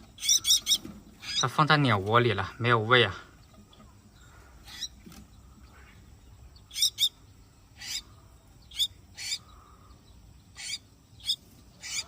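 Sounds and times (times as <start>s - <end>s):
birds harsh chirping calls: 0.0s - 12.0s.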